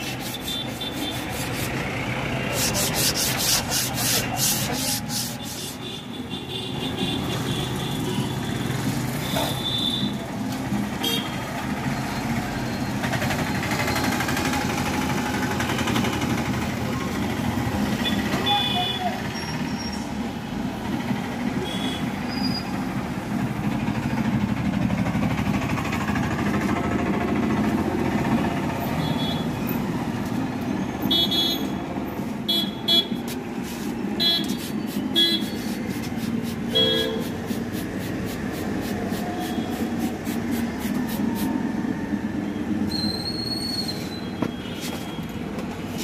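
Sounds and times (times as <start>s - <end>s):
road traffic rumble: 0.0s - 46.0s
short vehicle horn toots: 36.7s - 37.3s.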